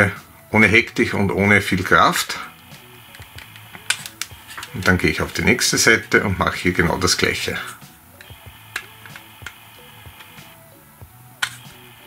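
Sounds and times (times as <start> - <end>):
quiet background music: 0.0 - 12.0
plastic latches clicking: 3.2 - 4.8.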